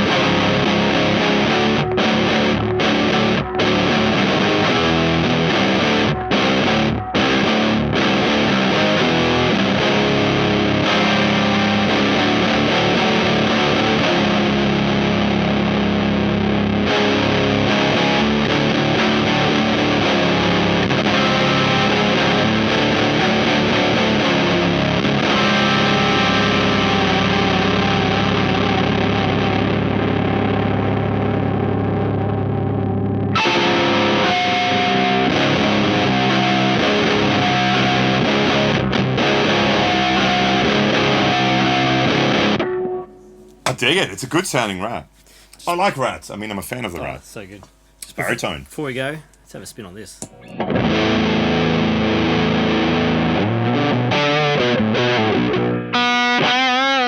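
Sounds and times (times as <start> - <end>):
heavy distorted electric guitar chords: 0.0 - 43.6, 50.3 - 57.0.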